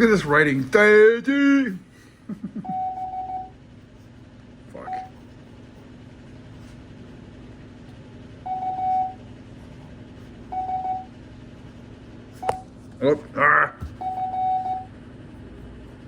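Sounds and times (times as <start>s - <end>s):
steady low hum: 0.0s - 16.0s
morse code beeping: 2.6s - 3.6s, 8.4s - 9.2s, 10.5s - 11.2s, 14.0s - 14.9s.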